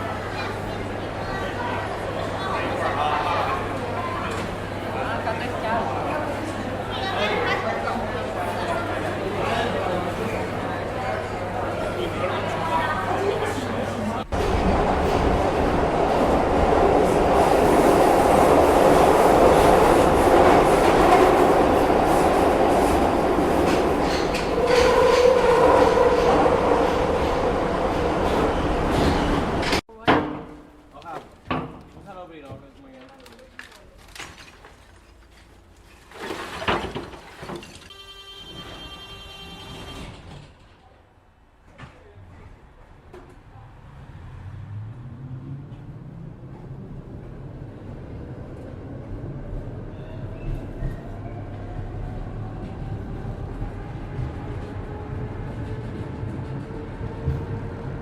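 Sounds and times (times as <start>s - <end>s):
train wheels rumbling on rails: 14.2s - 29.8s, 45.6s - 58.0s.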